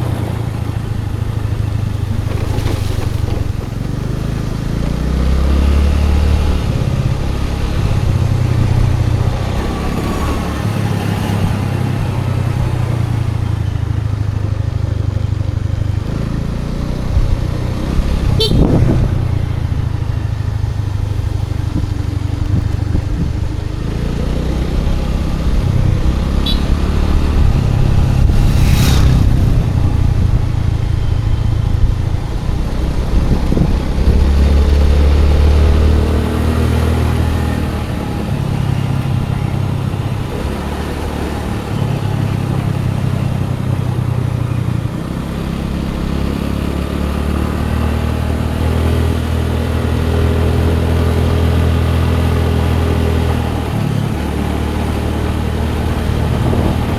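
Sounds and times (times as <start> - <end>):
scooter engine running: 0.0 - 56.9
whoosh of passing traffic: 0.0 - 56.9
wind and road noise: 0.0 - 56.9
vehicle horn toots: 18.3 - 19.0, 26.3 - 26.9.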